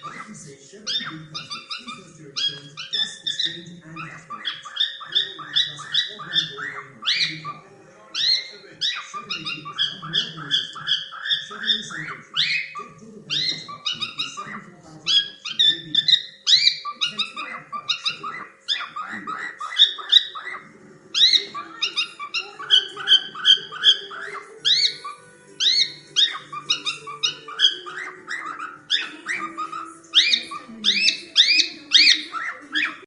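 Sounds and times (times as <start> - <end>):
cockatiel chicks chirping: 0.0 - 33.0.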